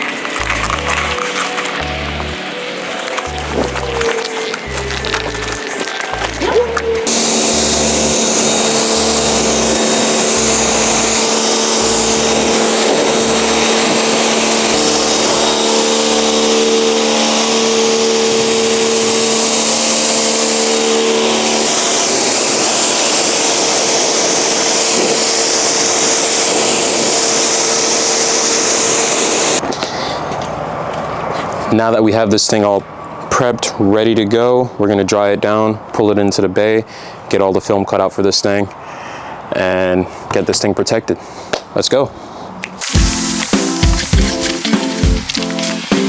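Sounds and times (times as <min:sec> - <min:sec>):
water spray hissing: 0:00.0 - 0:29.6, 0:42.8 - 0:46.0
pressure washer motor hum: 0:00.0 - 0:29.7, 0:42.8 - 0:46.0.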